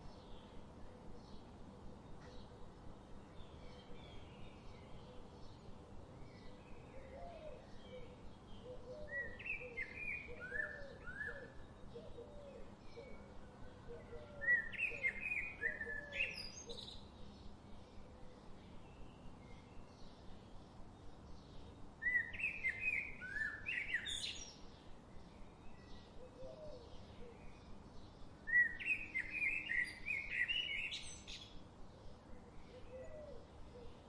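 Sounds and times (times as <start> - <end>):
faint background noise: 0.0 - 34.0
birds singing and chirping: 6.3 - 13.3, 14.0 - 17.5, 20.8 - 31.6.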